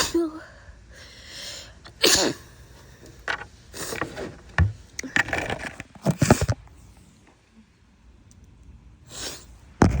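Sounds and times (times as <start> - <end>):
woman sneezing and sniffling: 1.9 - 2.6.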